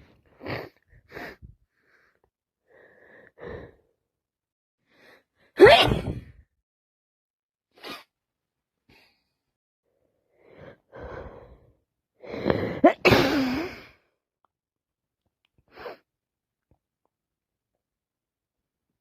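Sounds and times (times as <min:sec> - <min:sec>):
woman sneezing: 0:05.6 - 0:06.3, 0:12.8 - 0:13.7.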